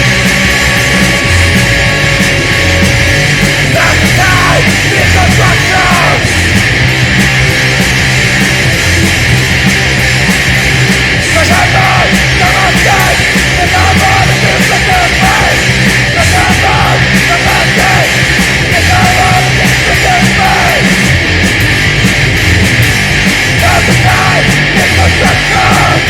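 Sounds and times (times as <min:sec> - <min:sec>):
distorted punk metal music: 0:00.0 - 0:26.0
person yelling vocals: 0:03.7 - 0:06.3, 0:11.3 - 0:21.0, 0:23.6 - 0:26.0.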